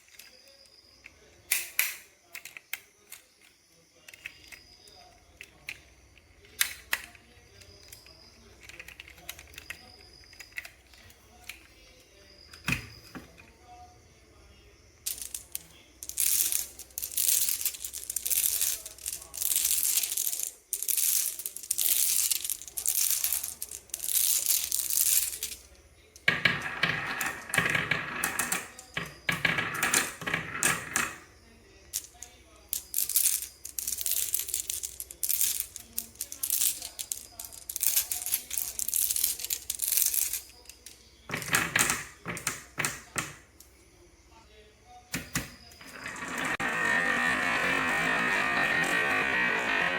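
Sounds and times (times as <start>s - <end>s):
marbles rattling on wooden run: 15.1s - 31.2s, 32.0s - 43.4s, 45.8s - 49.9s.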